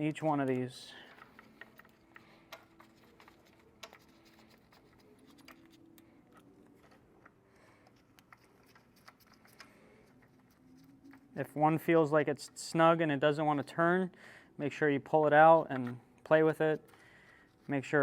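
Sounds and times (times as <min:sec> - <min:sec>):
small clicks of bolts threading: 0:00.2 - 0:09.7.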